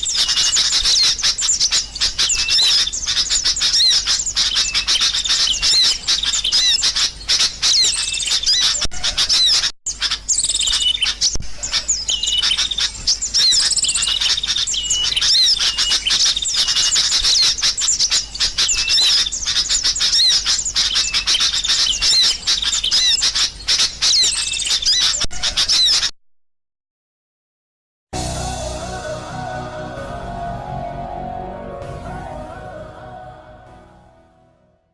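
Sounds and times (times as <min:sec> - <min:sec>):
birds chattering: 0:00.0 - 0:26.0.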